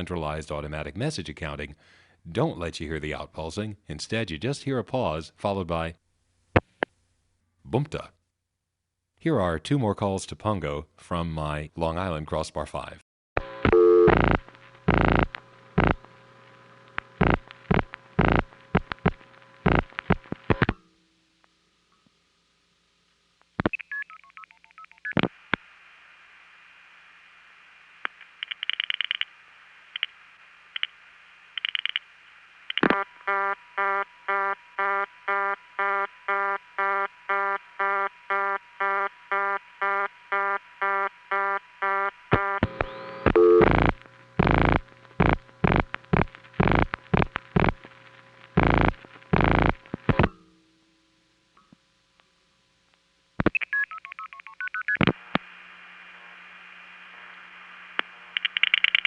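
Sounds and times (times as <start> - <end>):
buzzy pulsing tone: 14.1 - 16.2, 17.0 - 20.8, 32.7 - 50.4.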